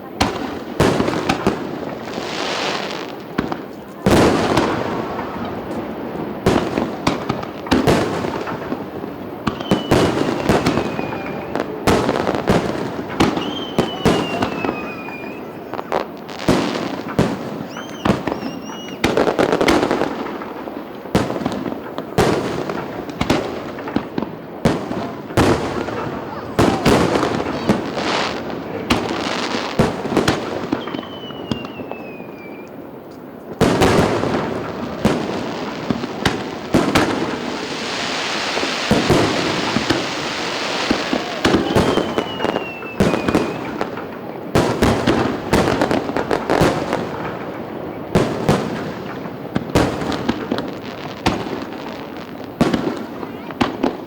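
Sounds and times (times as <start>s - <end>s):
firework bangs: 0.0s - 54.0s
firework crackling: 0.0s - 54.0s
falling firework whistle: 9.4s - 19.9s, 24.7s - 32.8s, 37.6s - 44.0s.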